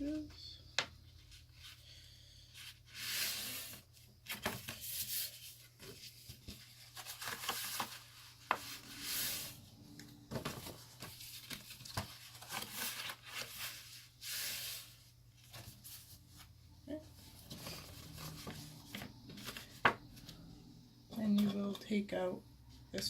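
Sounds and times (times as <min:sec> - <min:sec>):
cardstock folding and rustling: 0:02.5 - 0:16.5, 0:17.1 - 0:20.4.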